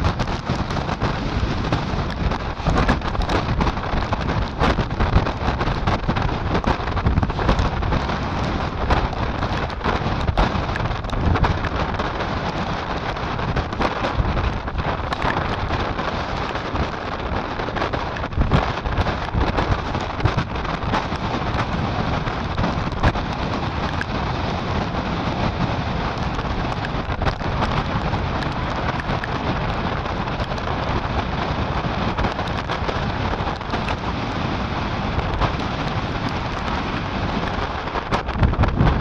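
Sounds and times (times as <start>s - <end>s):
gusting wind on microphone: 0.0s - 39.0s
waves churning: 0.0s - 39.0s.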